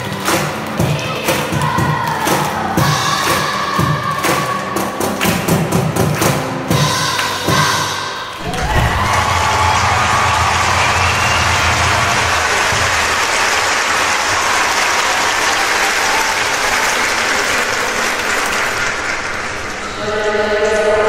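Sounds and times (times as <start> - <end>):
audience applause: 8.4 - 19.9.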